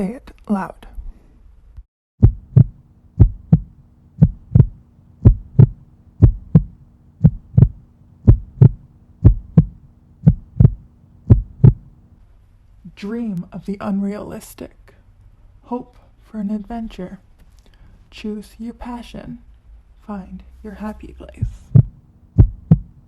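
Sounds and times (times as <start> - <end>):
heartbeat: 2.2 - 12.1, 21.4 - 23.0
faint steady hum: 2.2 - 16.8, 18.6 - 23.0.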